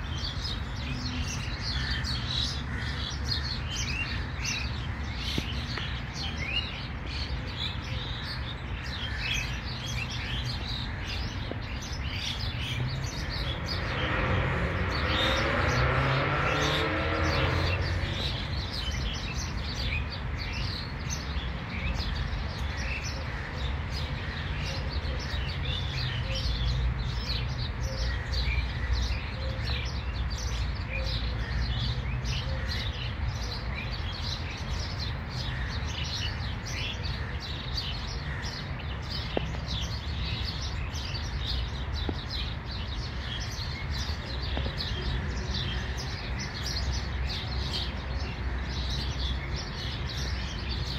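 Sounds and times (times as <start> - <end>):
small birds chirping and twittering: 0.0 - 50.9.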